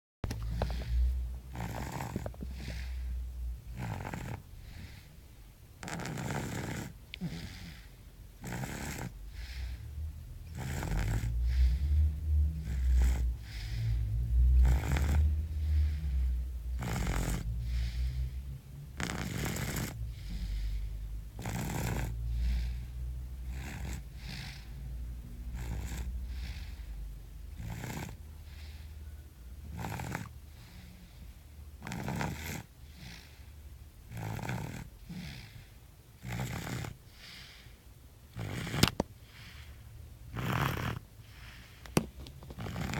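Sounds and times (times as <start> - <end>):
slow regular snoring: 0.3 - 5.2, 5.8 - 29.0, 29.6 - 42.9
low rumble: 11.2 - 16.8.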